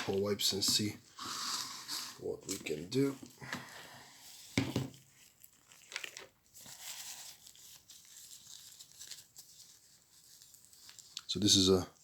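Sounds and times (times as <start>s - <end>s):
wipe packaging tearing and crinkling: 4.2s - 12.0s.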